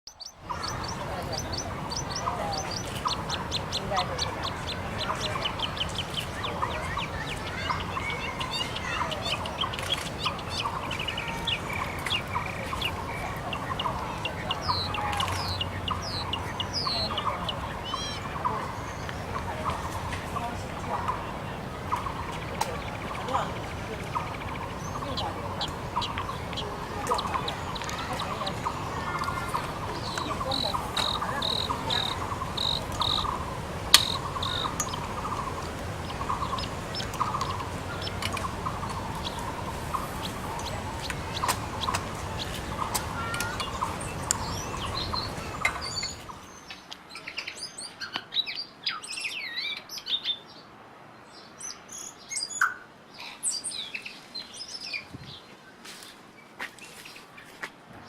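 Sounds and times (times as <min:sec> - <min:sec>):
small birds chirping: 0:00.0 - 0:58.0
barbet calling low notes: 0:00.1 - 0:46.4
higher repeated bird notes: 0:00.1 - 0:46.4
steady background hiss: 0:00.2 - 0:58.0.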